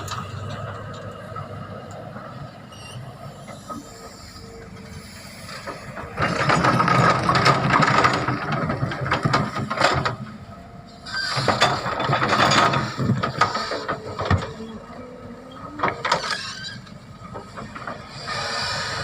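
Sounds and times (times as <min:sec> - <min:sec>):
grinding rattling metal with squealing: 0:02.3 - 0:19.0.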